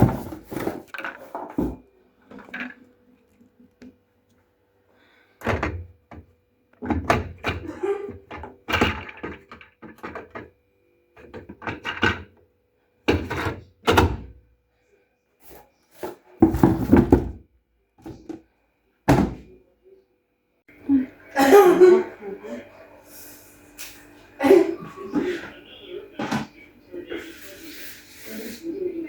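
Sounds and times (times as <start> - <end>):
irregular thuds and knocks: 16.4 - 18.4, 19.1 - 19.5.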